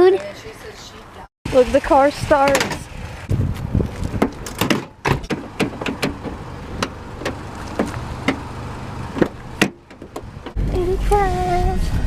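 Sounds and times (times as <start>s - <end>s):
car engine humming: 0.0s - 12.0s
sharp engine clicks and knocks: 1.5s - 11.2s.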